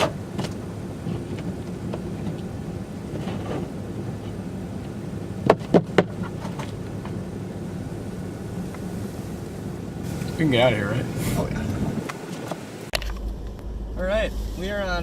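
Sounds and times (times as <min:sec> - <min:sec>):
car cabin hum while driving: 0:00.0 - 0:15.0.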